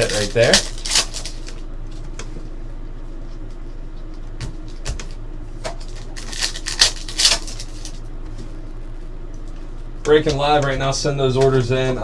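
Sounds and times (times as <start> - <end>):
foil packs rustling: 0.0 - 1.6, 5.7 - 8.0
low steady hum: 0.0 - 12.0.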